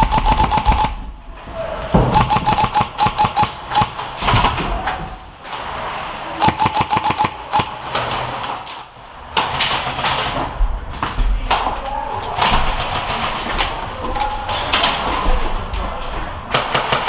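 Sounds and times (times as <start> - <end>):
airsoft guns firing bursts: 0.0 - 1.1, 2.1 - 4.2, 6.4 - 8.6.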